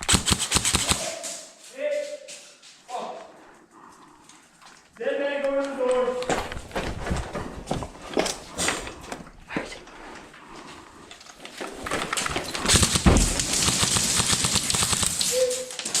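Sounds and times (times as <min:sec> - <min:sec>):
airsoft gun clicks: 0:00.0 - 0:01.2, 0:12.7 - 0:15.4
airsoft gun firing rapidly: 0:00.0 - 0:01.3, 0:12.7 - 0:15.6.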